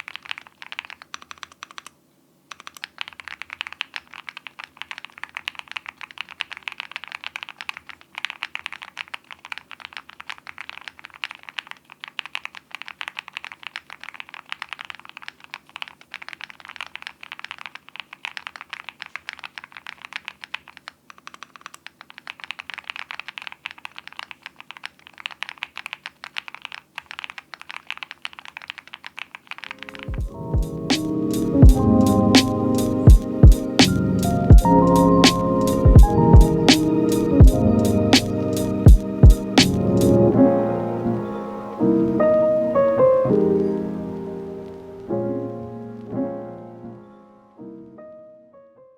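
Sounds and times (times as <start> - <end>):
fast mechanical keyboard typing: 0.0 - 40.2
music: 29.8 - 48.9.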